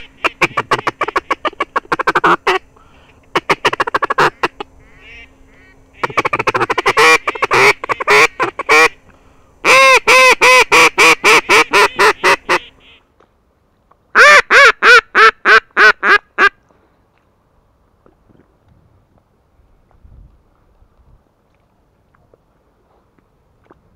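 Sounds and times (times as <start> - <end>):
duck call quacks: 0.0 - 2.7, 3.3 - 9.0, 9.6 - 13.0, 14.2 - 16.6.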